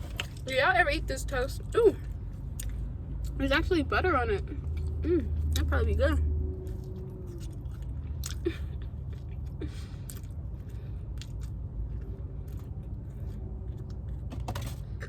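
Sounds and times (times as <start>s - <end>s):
quiet chewing: 6.6s - 14.8s.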